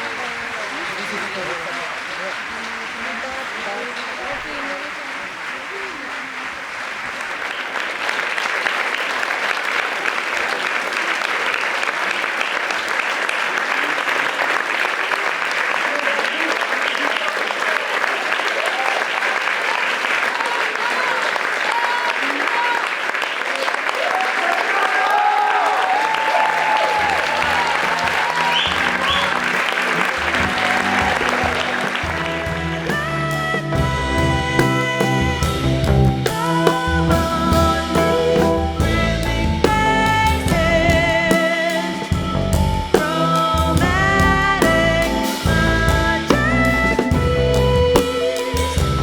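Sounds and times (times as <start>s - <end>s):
audience applauding: 0.0s - 43.9s
high cries from crowd: 15.8s - 35.2s.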